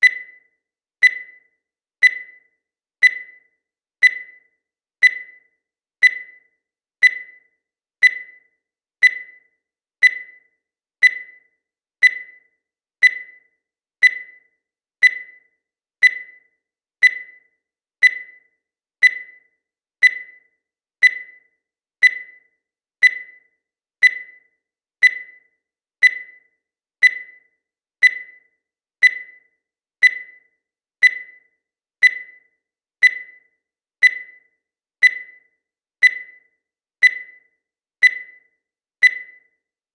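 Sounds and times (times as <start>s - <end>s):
timer beeping: 0.0s - 39.8s.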